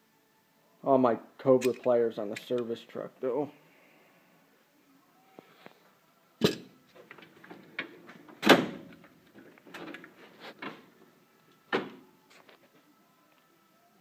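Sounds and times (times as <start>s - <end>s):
metal drawers opening and shutting: 6.4s - 10.9s.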